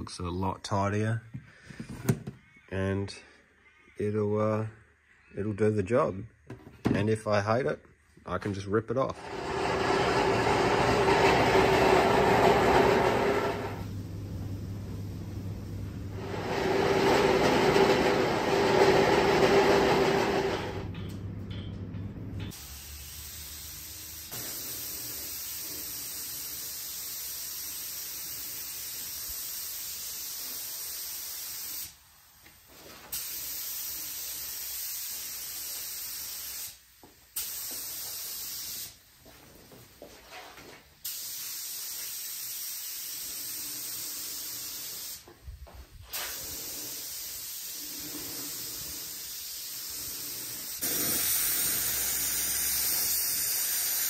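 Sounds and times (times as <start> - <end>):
spray paint hissing: 22.5 - 32.0, 33.1 - 39.0, 41.0 - 45.3, 46.1 - 54.0.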